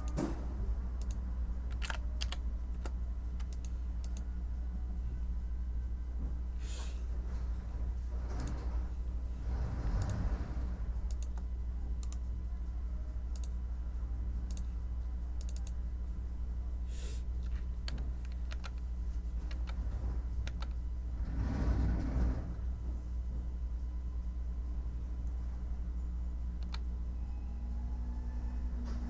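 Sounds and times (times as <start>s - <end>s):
low hum: 0.0s - 29.0s
keyboard typing: 1.0s - 4.3s, 15.4s - 15.8s, 17.4s - 19.8s, 20.4s - 20.8s, 26.6s - 26.9s.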